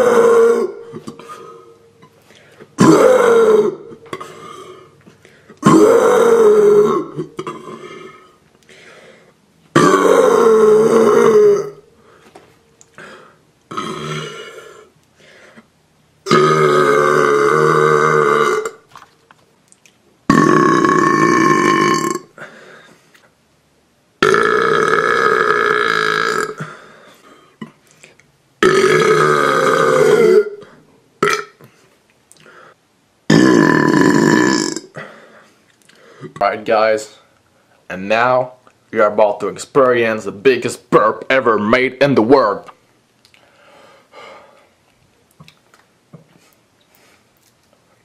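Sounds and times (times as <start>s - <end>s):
person burping loudly: 0.0s - 2.1s, 2.8s - 5.0s, 5.6s - 8.4s, 9.7s - 11.9s, 13.7s - 14.9s, 16.2s - 19.1s, 20.3s - 22.5s, 24.2s - 26.9s, 28.6s - 31.7s, 33.3s - 35.2s.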